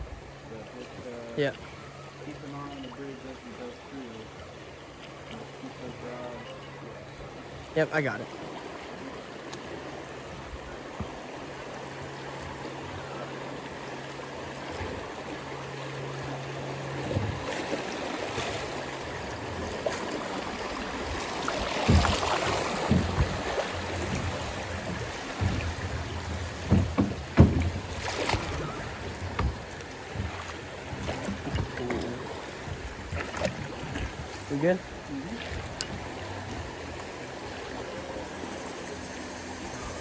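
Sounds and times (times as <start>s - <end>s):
river water rushing: 0.0s - 40.0s
knocks and splashes: 14.1s - 37.7s.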